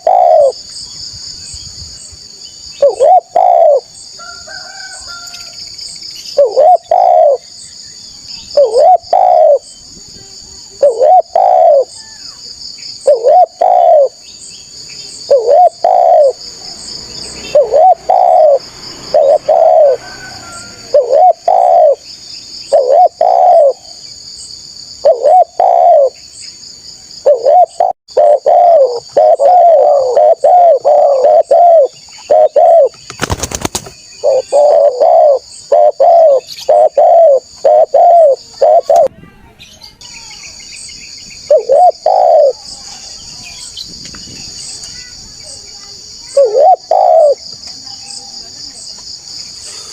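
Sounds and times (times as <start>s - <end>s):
dove cooing: 0.0s - 0.6s, 2.8s - 3.9s, 6.4s - 7.4s, 8.6s - 9.7s, 10.8s - 12.0s, 13.0s - 14.2s, 15.2s - 16.5s, 17.4s - 22.0s, 22.7s - 24.0s, 25.0s - 26.2s, 27.2s - 33.5s, 34.2s - 39.1s, 41.5s - 42.7s, 46.3s - 47.5s
crackling noise: 38.2s - 39.1s.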